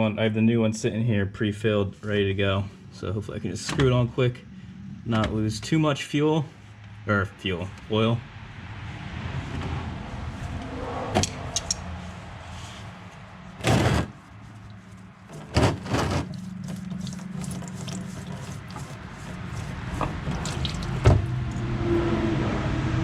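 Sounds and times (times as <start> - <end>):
oil splashing: 14.1 - 21.6.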